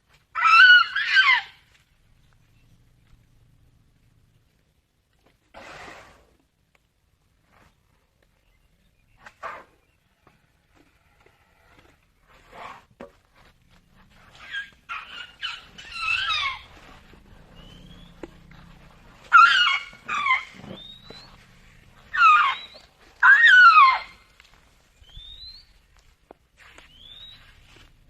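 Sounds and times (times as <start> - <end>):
elephant calf squeaking: 9.2 - 24.4, 26.6 - 28.0.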